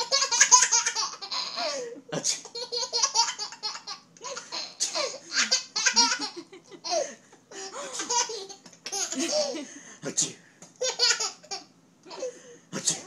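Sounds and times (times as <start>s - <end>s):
baby laughing: 0.0s - 1.8s, 2.4s - 7.1s, 7.9s - 9.7s, 10.8s - 12.3s.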